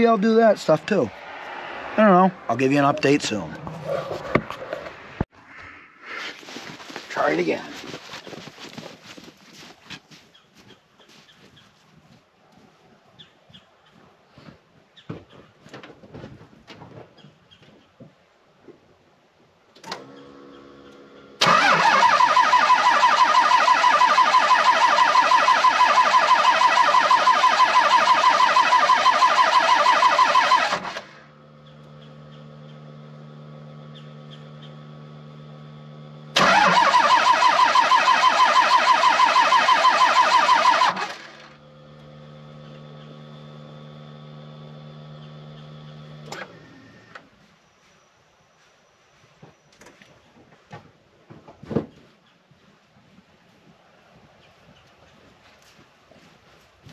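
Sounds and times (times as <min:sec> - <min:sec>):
diesel engine cranking on starter: 0:19.8 - 0:47.3.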